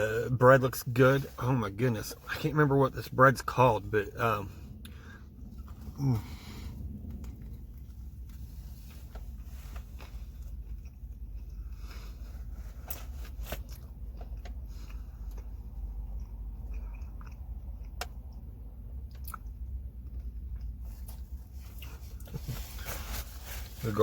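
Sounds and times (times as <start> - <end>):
steady low hum: 0.0 - 24.0
chewing sandwich: 4.1 - 23.0.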